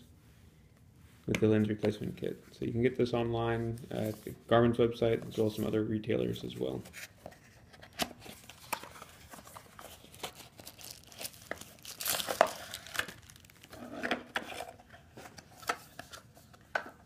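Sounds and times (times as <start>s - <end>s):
plastic packaging crinkling: 8.2s - 13.8s.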